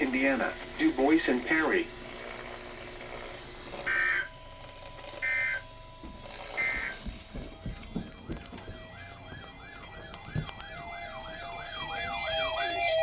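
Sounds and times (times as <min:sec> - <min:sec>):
emergency siren yelping: 0:03.8 - 0:13.0.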